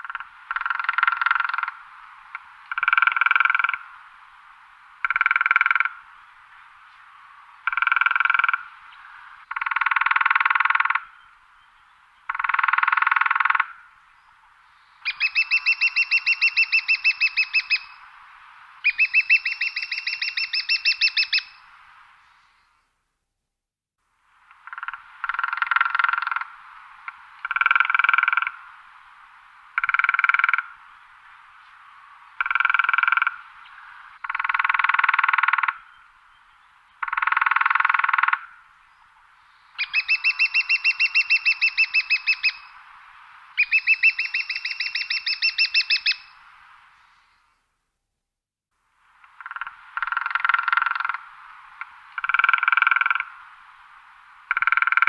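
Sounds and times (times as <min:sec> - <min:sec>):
woodpecker drumming on tree: 0:00.0 - 0:03.9, 0:05.0 - 0:06.0, 0:07.6 - 0:08.7, 0:09.4 - 0:11.1, 0:12.3 - 0:13.8, 0:15.1 - 0:17.9, 0:24.5 - 0:28.6, 0:29.7 - 0:30.8, 0:32.4 - 0:33.4, 0:34.2 - 0:35.9, 0:37.0 - 0:38.6, 0:39.8 - 0:42.6, 0:43.6 - 0:46.3, 0:49.2 - 0:53.4, 0:54.5 - 0:55.0.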